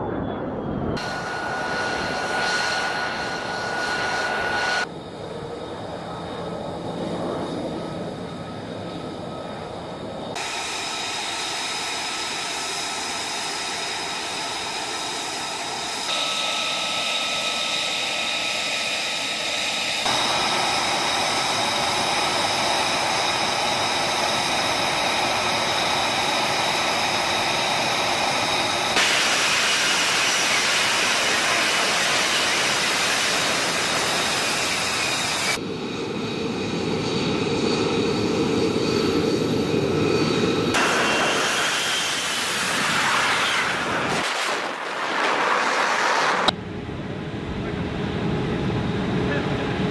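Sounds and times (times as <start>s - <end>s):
jet engine whine: 0.0s - 49.9s.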